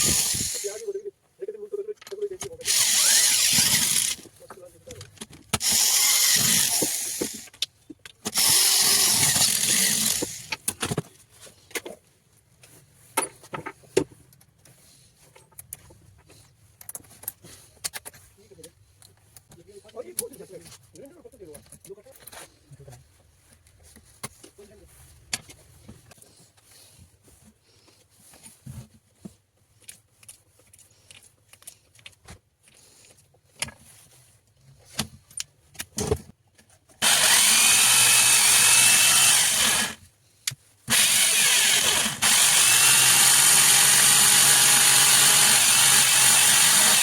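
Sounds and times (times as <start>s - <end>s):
rotary hammer drill running: 0.0s - 0.8s, 2.6s - 4.3s, 5.6s - 7.5s, 8.3s - 10.6s, 37.0s - 40.0s, 40.9s - 47.0s.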